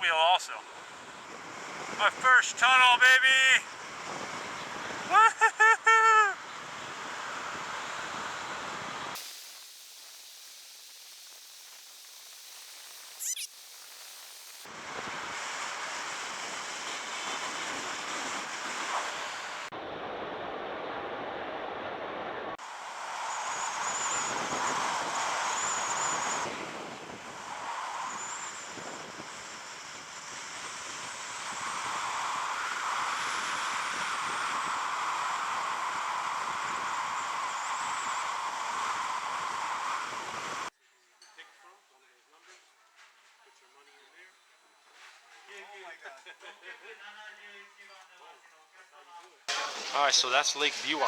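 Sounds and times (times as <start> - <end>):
wind roaring over microphone: 0.6 - 2.6, 3.7 - 5.1, 23.1 - 40.7.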